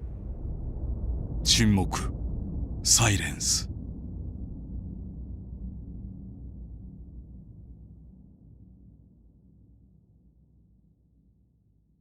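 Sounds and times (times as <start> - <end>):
low deep drone music: 3.6 - 9.9.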